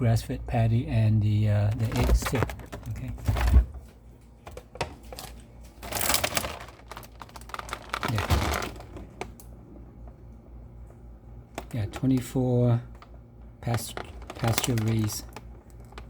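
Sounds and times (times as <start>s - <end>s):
packaging rustling: 1.7s - 3.6s, 5.0s - 9.4s, 12.9s - 16.0s.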